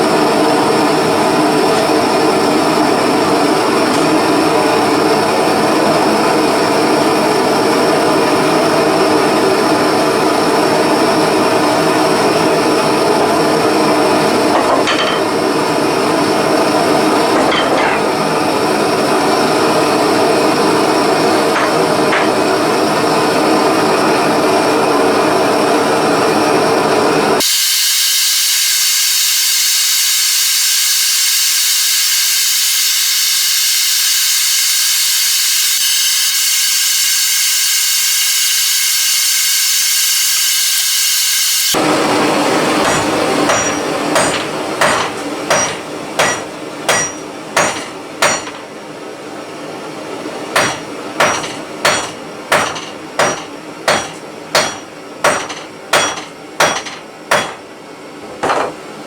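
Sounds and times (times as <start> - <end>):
blow lamp flame hissing: 27.4 - 41.9
hammer striking hot metal: 42.8 - 48.6, 50.6 - 57.6.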